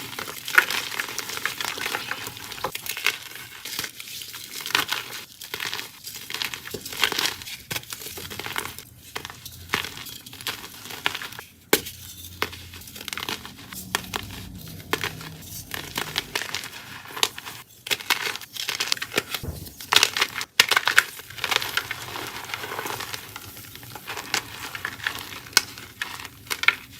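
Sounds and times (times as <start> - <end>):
chalk crushing and crunching: 0.0 - 26.9.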